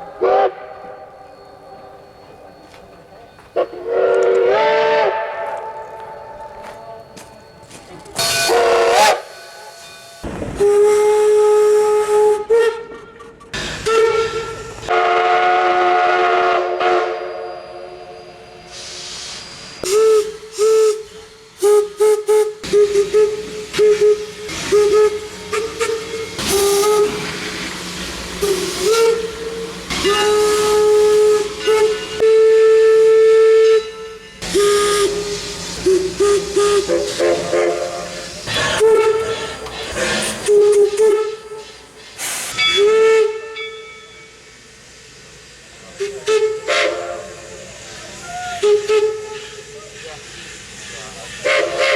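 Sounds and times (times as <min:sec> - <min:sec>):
steam locomotive whistle blasts: 0:00.0 - 0:02.3, 0:03.6 - 0:07.2, 0:08.2 - 0:13.2, 0:13.8 - 0:27.7, 0:28.4 - 0:44.6, 0:45.8 - 0:51.9
steam hissing: 0:13.6 - 0:51.9.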